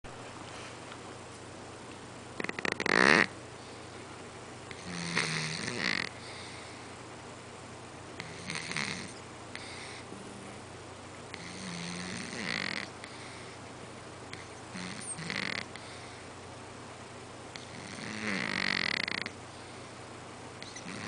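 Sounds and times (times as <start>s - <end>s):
cat snoring: 2.4s - 3.3s, 4.7s - 6.4s, 8.2s - 10.6s, 11.3s - 13.5s, 14.3s - 16.1s, 17.6s - 19.4s, 20.6s - 21.0s.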